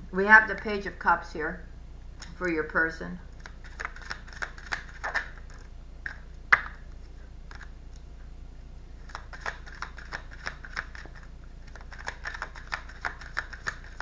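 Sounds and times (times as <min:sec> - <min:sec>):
cards shuffling: 0:03.4 - 0:05.7, 0:09.0 - 0:14.0.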